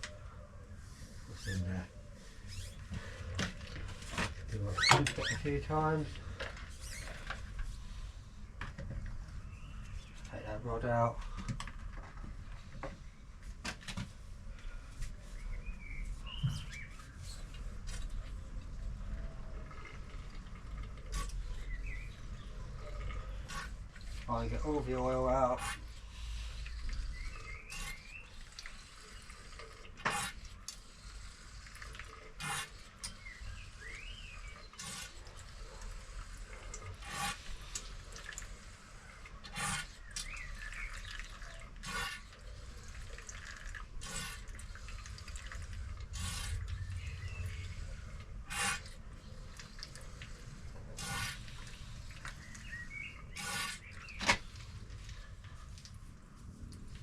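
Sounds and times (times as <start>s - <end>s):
oil gurgling into a bowl: 42.4s - 47.6s.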